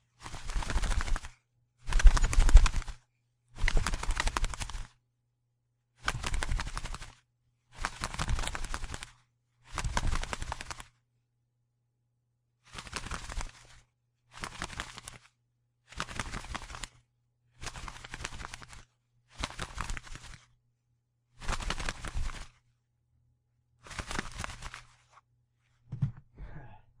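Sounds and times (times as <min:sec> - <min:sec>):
bird wings flapping: 0:00.2 - 0:03.0, 0:03.6 - 0:05.0, 0:06.0 - 0:10.9, 0:12.7 - 0:15.3, 0:15.9 - 0:17.0, 0:17.6 - 0:20.5, 0:21.4 - 0:22.6, 0:23.8 - 0:25.0.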